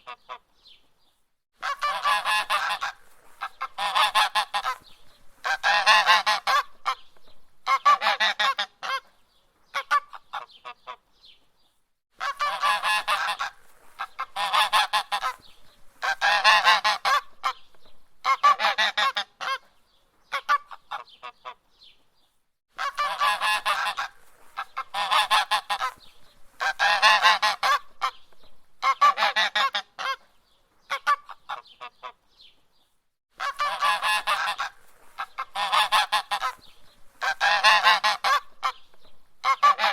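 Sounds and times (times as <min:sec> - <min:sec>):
goose honking: 0:01.6 - 0:07.0, 0:07.6 - 0:09.0, 0:12.2 - 0:15.4, 0:16.0 - 0:17.6, 0:18.2 - 0:19.6, 0:22.8 - 0:28.2, 0:28.8 - 0:30.2, 0:33.4 - 0:38.8, 0:39.4 - 0:39.9.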